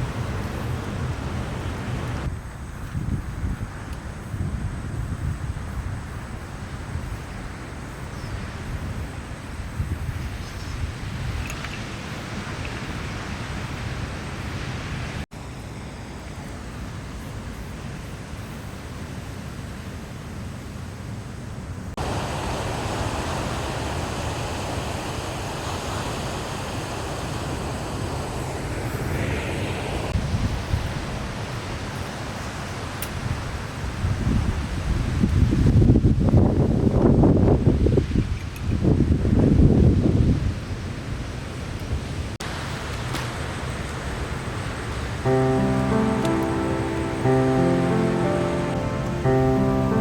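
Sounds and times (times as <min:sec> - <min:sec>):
wind buffeting microphone: 0:00.0 - 0:14.2, 0:33.2 - 0:42.2.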